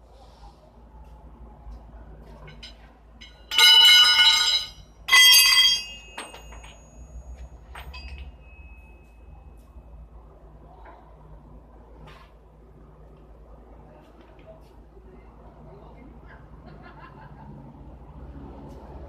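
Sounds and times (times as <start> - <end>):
metallic clanging: 2.4 - 9.2
light metal clinks: 2.4 - 9.9
ringing tone: 3.2 - 10.0.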